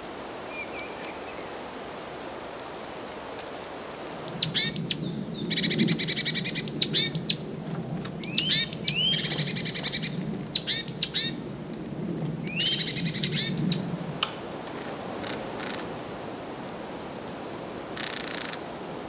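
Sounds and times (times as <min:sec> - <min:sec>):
songbird singing: 0:00.5 - 0:01.7, 0:04.3 - 0:07.5, 0:08.2 - 0:11.4, 0:12.5 - 0:13.9.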